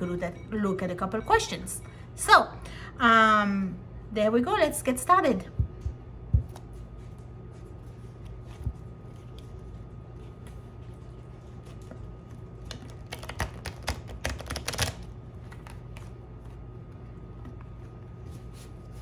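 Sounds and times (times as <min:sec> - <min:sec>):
steady low hum: 0:00.0 - 0:19.0
cards being shuffled: 0:07.6 - 0:19.0.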